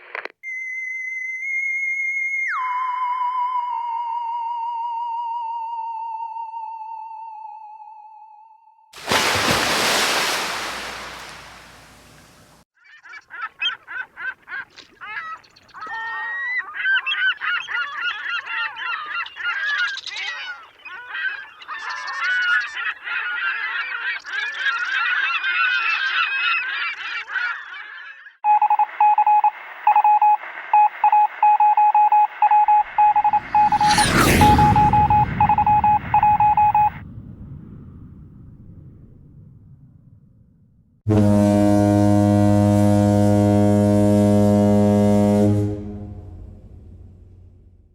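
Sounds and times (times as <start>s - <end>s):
high beeping tone: 31.9s - 37.0s.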